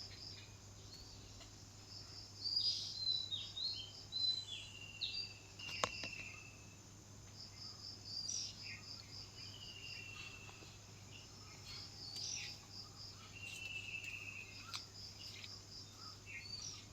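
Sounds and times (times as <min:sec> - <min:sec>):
birds chirping: 0:02.5 - 0:06.6, 0:07.6 - 0:16.9.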